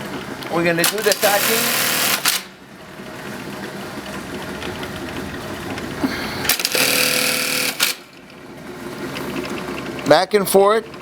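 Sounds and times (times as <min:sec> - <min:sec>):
sewing machine stitching: 0:00.8 - 0:02.5, 0:04.0 - 0:08.2.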